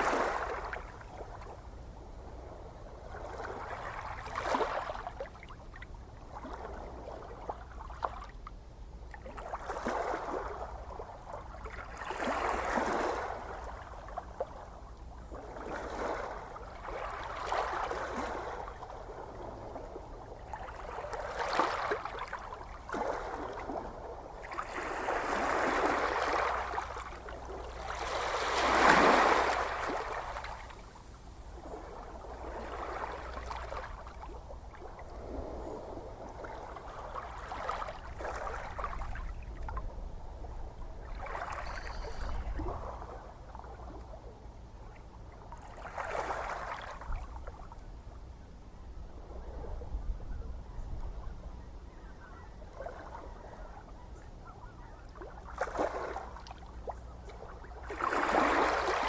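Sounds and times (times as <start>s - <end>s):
low rumble of surf: 0.0s - 59.0s
ocean waves washing onto shore: 23.2s - 39.0s.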